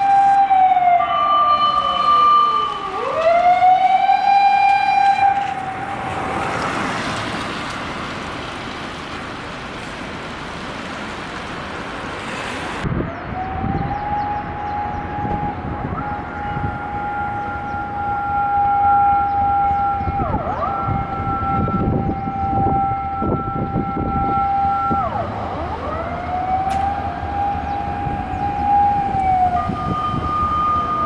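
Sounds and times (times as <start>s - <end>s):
higher siren tone: 0.0s - 6.6s, 12.9s - 31.0s
electronic siren wailing: 0.0s - 6.7s, 12.9s - 31.0s
road noise: 0.0s - 31.0s.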